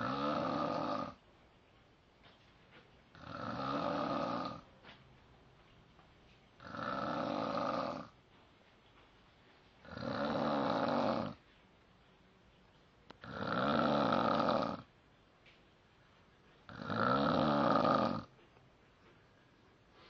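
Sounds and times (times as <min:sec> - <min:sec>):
person snoring: 0:00.0 - 0:01.2, 0:03.2 - 0:04.6, 0:06.6 - 0:08.1, 0:09.8 - 0:11.4, 0:13.2 - 0:14.8, 0:16.7 - 0:18.3.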